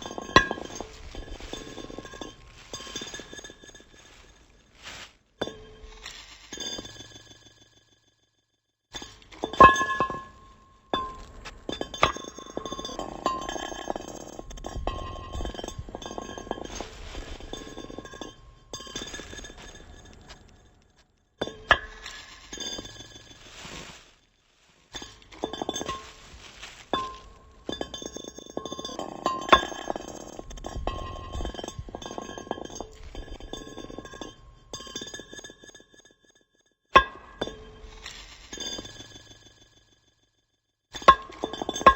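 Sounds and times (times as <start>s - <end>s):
glass clinking and ringing: 0.0s - 4.3s, 9.0s - 20.3s, 21.4s - 23.7s, 25.0s - 36.3s, 37.0s - 40.0s, 41.0s - 41.9s.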